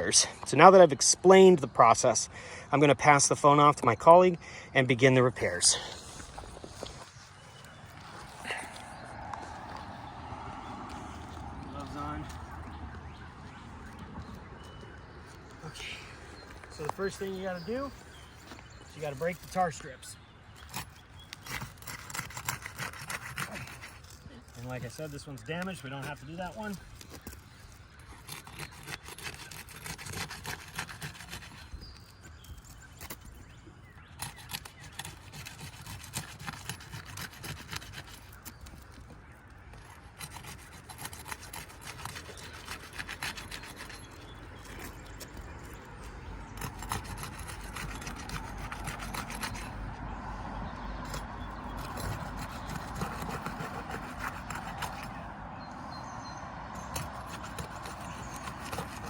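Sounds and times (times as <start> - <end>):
roof shingles scraping and crackling: 16.6 - 33.3.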